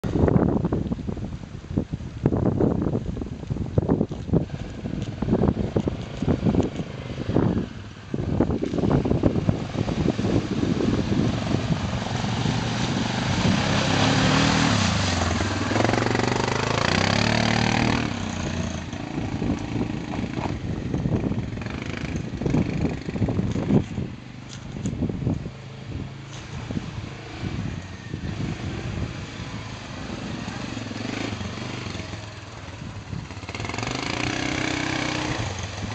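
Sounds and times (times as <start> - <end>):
dense rushing noise: 0.0 - 24.1
atv engine revving: 4.4 - 24.7, 26.3 - 35.9.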